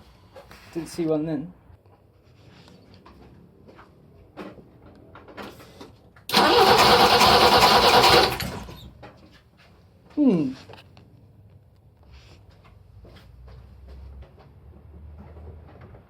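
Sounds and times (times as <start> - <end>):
engine cranking by starter motor: 6.3 - 9.0.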